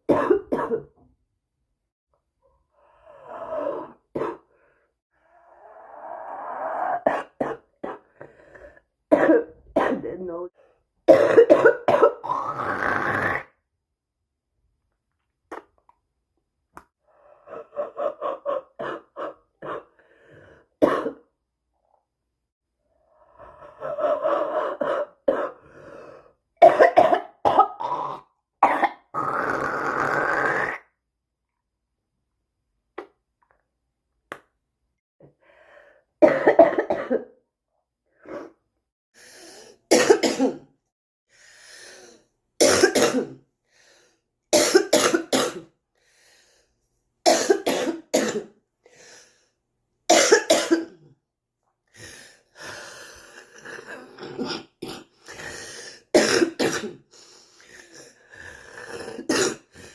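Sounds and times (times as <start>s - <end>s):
person coughing: 0.0s - 1.0s, 9.1s - 10.2s, 11.1s - 12.4s, 20.8s - 21.3s, 26.6s - 29.0s, 36.2s - 37.4s, 39.9s - 40.7s, 42.6s - 43.4s, 44.5s - 45.7s, 47.3s - 48.6s, 50.1s - 51.1s, 56.2s - 57.1s.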